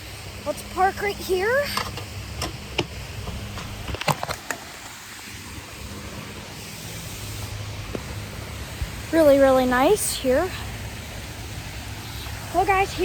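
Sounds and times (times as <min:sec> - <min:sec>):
sharp clicks and knocks: 0:01.7 - 0:04.6
waterfall rushing: 0:03.0 - 0:13.0.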